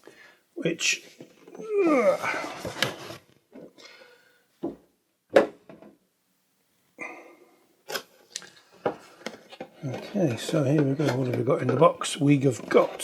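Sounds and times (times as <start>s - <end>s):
cardboard rustling: 2.2s - 3.3s.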